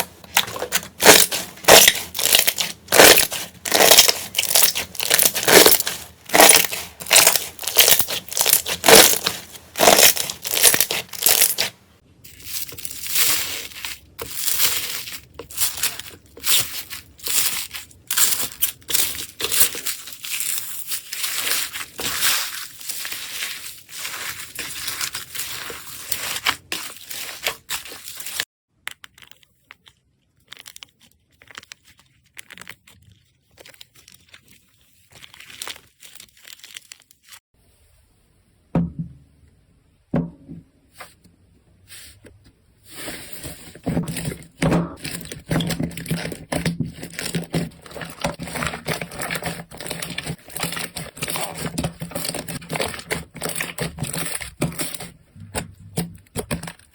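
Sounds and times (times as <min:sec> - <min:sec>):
slime crackling and popping: 0:00.0 - 0:11.7.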